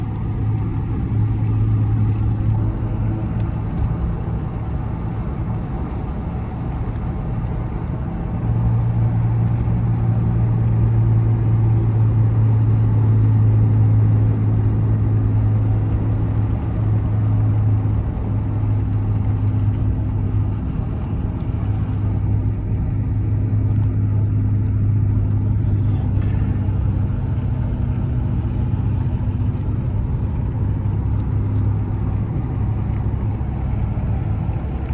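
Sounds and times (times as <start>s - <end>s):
car engine and tyres drone: 0.0s - 34.9s.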